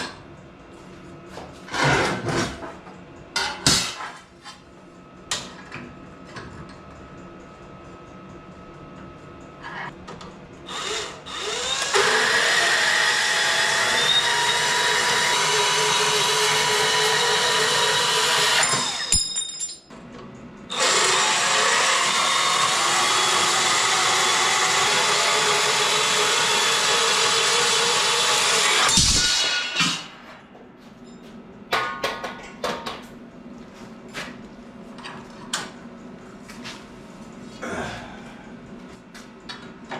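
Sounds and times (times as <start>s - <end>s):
power tool working steel: 10.7s - 19.2s, 20.7s - 30.1s.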